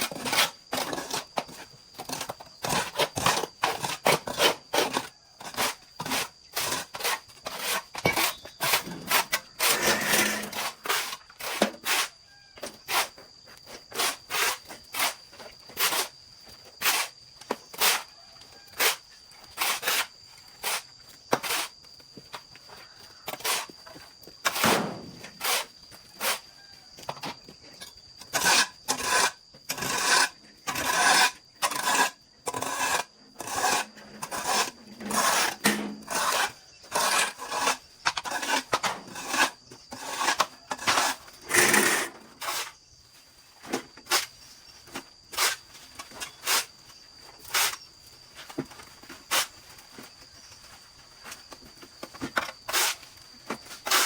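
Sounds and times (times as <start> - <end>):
high insect whine: 4.6 - 54.0
hand saw rasping through wood: 28.3 - 42.7.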